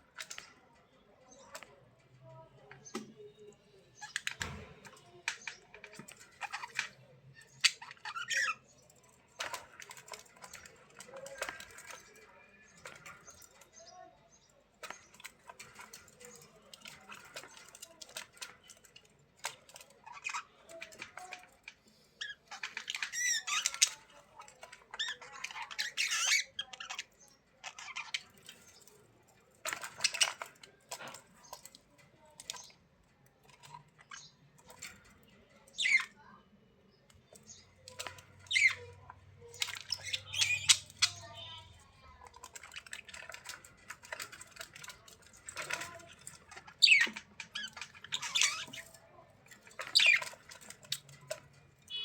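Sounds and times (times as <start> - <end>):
budgerigars chattering and warbling: 5.2 - 13.9, 19.4 - 28.8, 37.2 - 48.9, 49.6 - 52.0.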